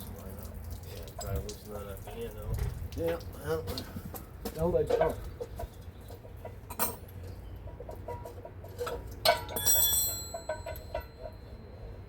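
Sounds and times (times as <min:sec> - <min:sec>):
metal clank ringing like a bell: 0:09.2 - 0:11.8.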